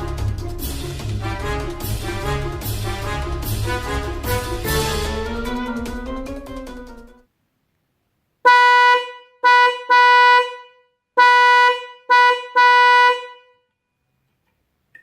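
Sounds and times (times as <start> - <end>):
electric car horn blasts: 8.4 - 13.7.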